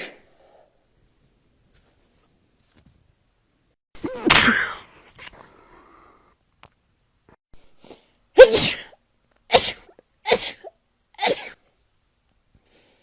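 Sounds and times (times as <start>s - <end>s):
person sneezing: 4.0s - 5.5s, 7.8s - 11.6s.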